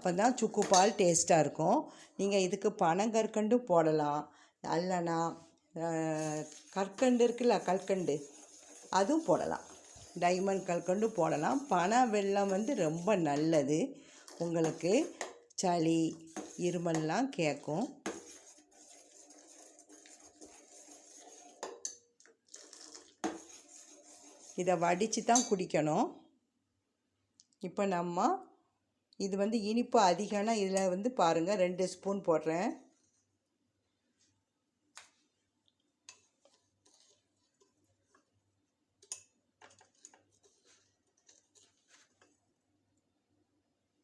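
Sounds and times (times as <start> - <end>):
milk bubbling in a pan: 6.0 - 25.1, 32.9 - 44.0
spoon scraping a cooking pot: 6.1 - 25.6, 36.0 - 38.3, 39.0 - 42.4.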